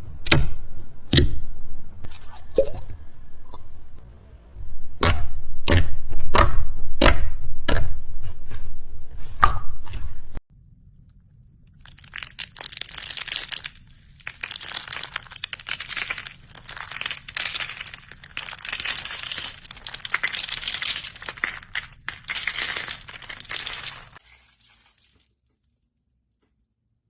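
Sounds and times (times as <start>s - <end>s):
slime squished by hand: 11.7s - 25.4s.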